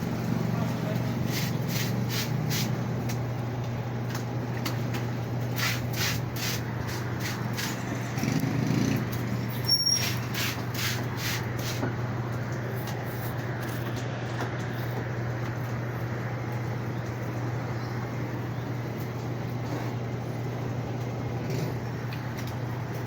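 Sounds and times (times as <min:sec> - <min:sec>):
water and laundry swishing: 0:00.0 - 0:04.5, 0:05.2 - 0:08.2, 0:09.0 - 0:13.9
washing machine motor hum: 0:00.0 - 0:23.0.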